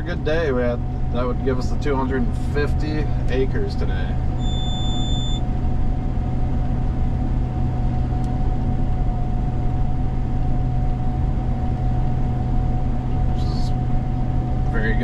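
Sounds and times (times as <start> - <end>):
combine harvester drone: 0.0 - 15.0
high beep: 4.4 - 5.4.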